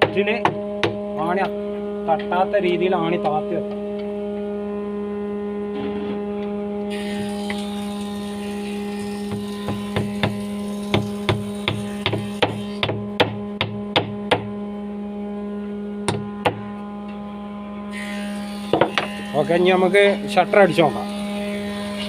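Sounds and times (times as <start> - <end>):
hammer striking nails into wood: 0.0 - 1.0, 9.3 - 14.5, 18.7 - 19.1
electrical hum: 0.0 - 22.0.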